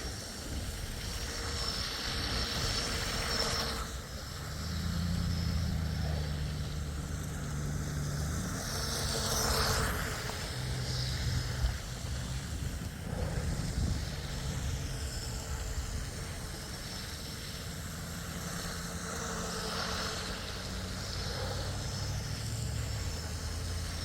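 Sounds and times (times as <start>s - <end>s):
electric boat motor whine: 0.0s - 24.0s
low hum: 0.0s - 24.0s.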